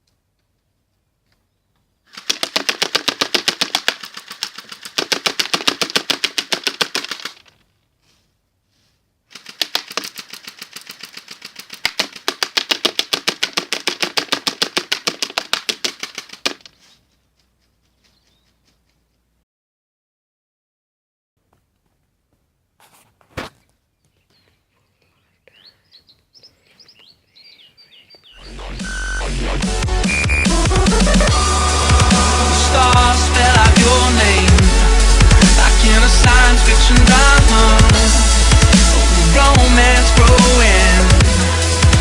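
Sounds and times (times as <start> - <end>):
airsoft gun firing full auto: 2.1 - 7.5, 9.3 - 15.4.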